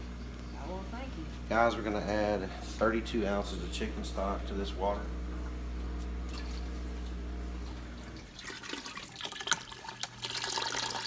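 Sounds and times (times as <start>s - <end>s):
liquid pouring into a pot: 7.7s - 11.0s.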